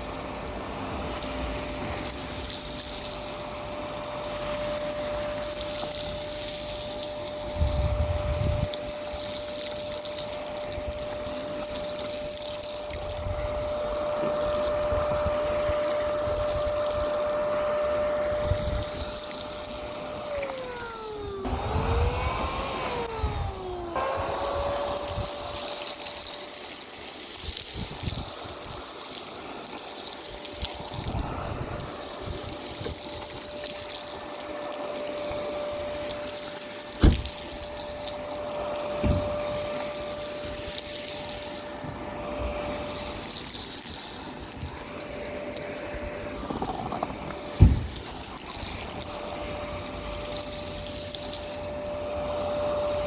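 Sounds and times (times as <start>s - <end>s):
gritty debris crackling in hose: 0.0s - 53.0s
vacuum cleaner running: 0.0s - 53.0s.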